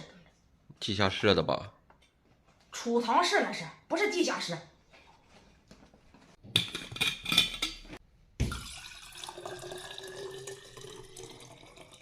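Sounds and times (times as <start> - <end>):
water pouring into bottle: 8.4 - 12.0.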